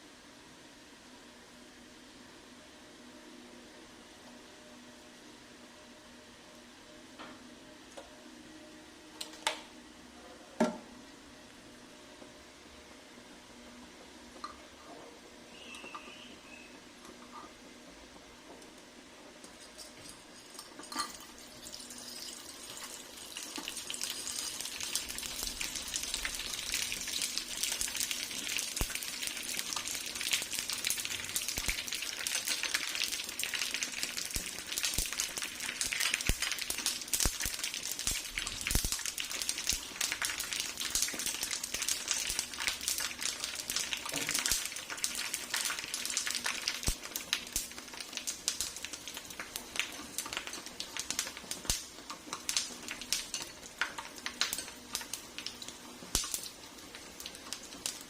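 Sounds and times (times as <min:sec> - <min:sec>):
pork skin frying in oil: 0:15.4 - 0:58.0.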